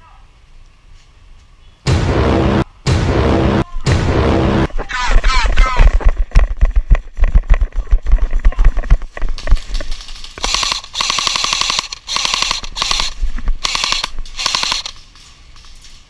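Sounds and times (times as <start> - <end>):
low thumps: 1.9 - 10.0
airsoft guns firing bursts: 10.0 - 15.0.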